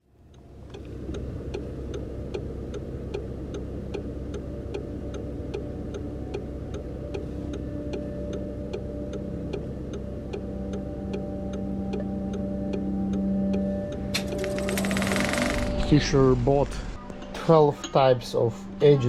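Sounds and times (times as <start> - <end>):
steady ticking: 0.2 - 16.9
low rumble: 13.8 - 17.6.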